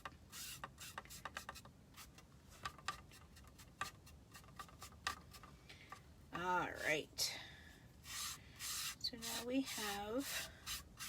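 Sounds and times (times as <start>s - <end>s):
paintbrush dabbing and brushing: 0.0s - 5.5s, 8.0s - 11.0s.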